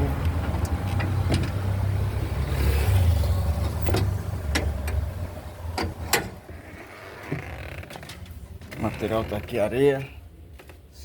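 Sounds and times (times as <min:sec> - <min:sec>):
motor vehicle passing: 0:00.0 - 0:07.3.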